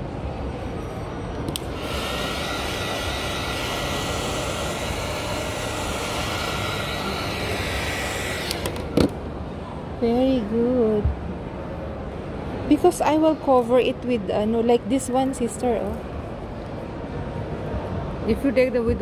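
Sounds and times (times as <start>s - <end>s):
small machine whirring: 1.5s - 9.2s.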